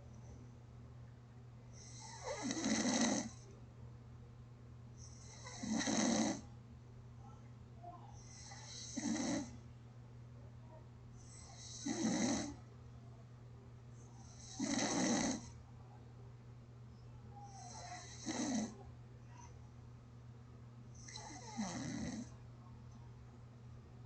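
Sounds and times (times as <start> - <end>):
steady low hum: 0.0 - 24.0
person snoring gently: 1.8 - 3.4, 5.2 - 6.4, 8.4 - 9.5, 11.5 - 12.6, 14.3 - 15.5, 17.6 - 18.7, 21.0 - 22.3.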